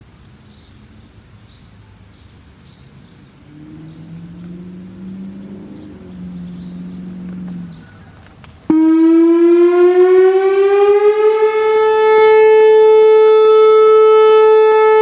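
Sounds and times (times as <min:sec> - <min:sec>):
low engine hum: 0:00.0 - 0:15.0
small bird chirping: 0:00.3 - 0:08.6.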